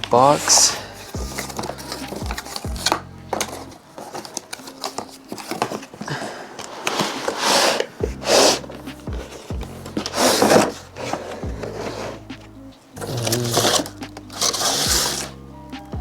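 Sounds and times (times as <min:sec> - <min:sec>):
background music: 0:00.0 - 0:16.0
box packaging being handled: 0:00.0 - 0:16.0
rubbing sliding swishes: 0:06.7 - 0:15.9.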